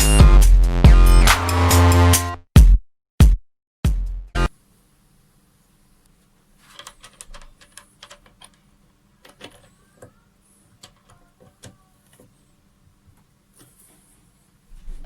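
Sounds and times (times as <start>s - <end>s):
faint clicks and taps: 6.0s - 12.4s.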